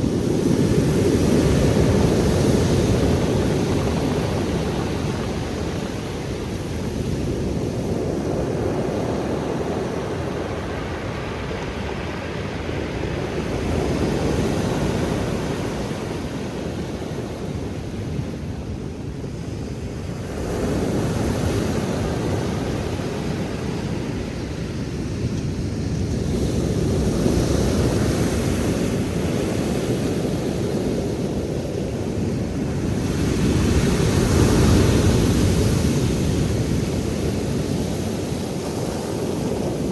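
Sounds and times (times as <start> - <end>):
surf washing onto shore: 0.0 - 18.0, 26.3 - 39.9.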